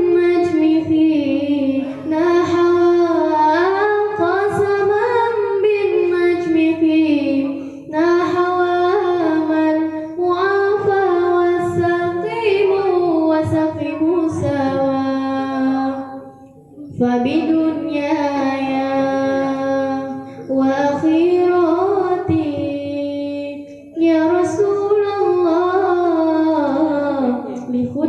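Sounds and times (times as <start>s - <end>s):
person singing devotional song: 0.0s - 28.0s
singer breathing: 20.2s - 20.5s.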